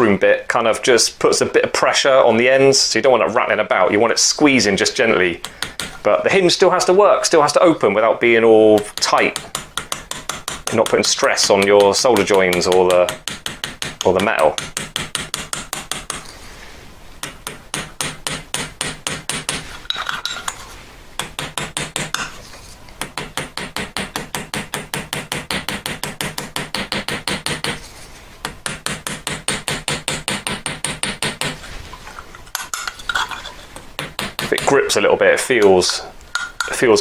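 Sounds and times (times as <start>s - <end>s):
small hammer tapping metal pin: 36.3s - 36.8s.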